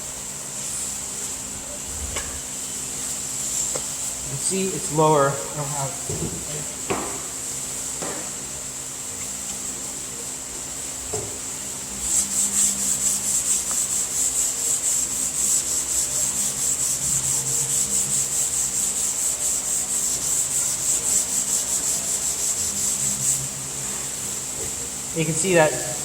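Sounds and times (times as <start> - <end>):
sandpaper rasping on metal: 11.9 - 24.2.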